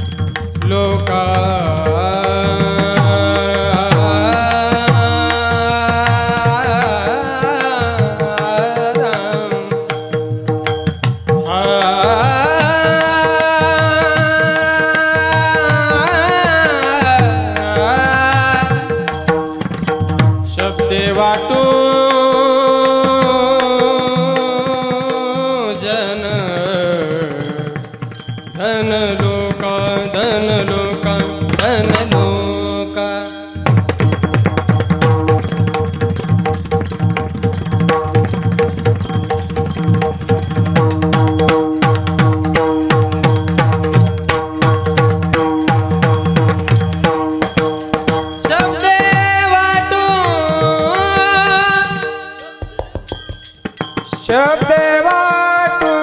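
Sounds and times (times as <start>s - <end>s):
person singing wordless melody: 0.0s - 56.0s
hand drum strokes: 33.7s - 55.0s.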